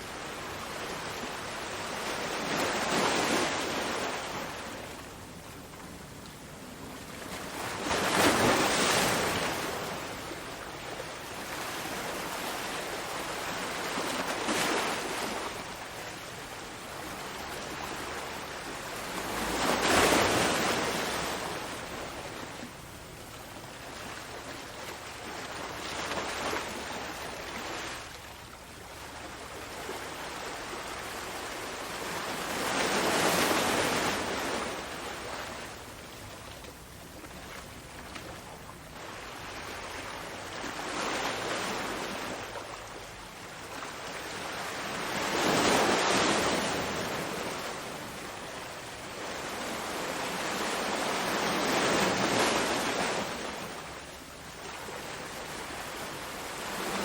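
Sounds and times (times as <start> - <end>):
ocean waves surf hiss: 0.0 - 57.0.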